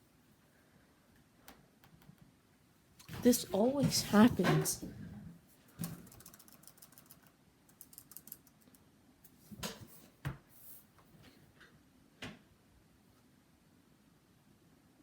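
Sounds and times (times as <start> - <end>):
laptop keyboard typing: 5.8 - 8.9.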